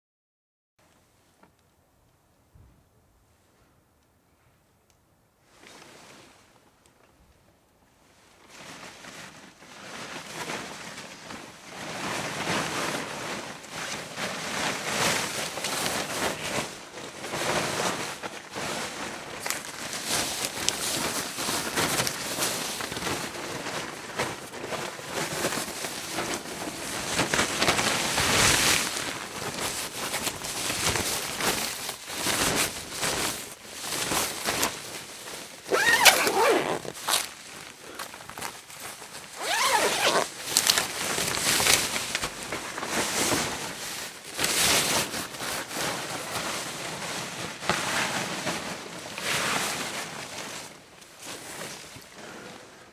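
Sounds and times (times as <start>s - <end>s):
stiff fabric rustling: 8.5s - 52.0s
zipper being pulled: 35.7s - 37.3s, 39.4s - 40.8s.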